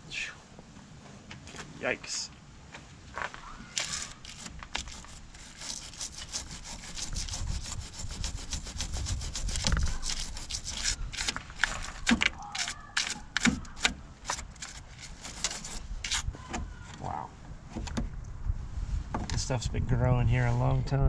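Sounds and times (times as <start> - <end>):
brush scrubbing metal: 3.8 - 16.3.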